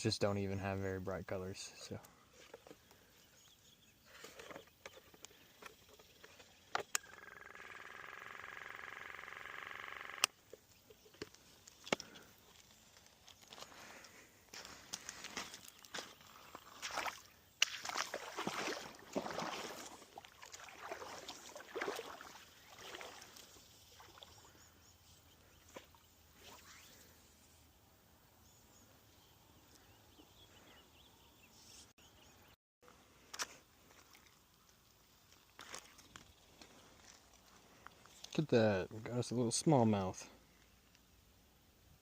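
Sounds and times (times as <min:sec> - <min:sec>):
faint river flowing: 0:01.0 - 0:28.7
water sloshing and splashing: 0:15.2 - 0:24.6.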